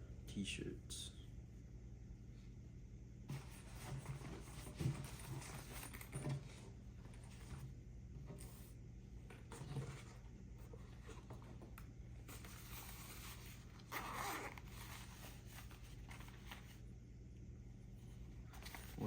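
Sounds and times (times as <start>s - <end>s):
low electrical hum: 0.0s - 19.0s
zipper-like rasp: 12.6s - 15.4s.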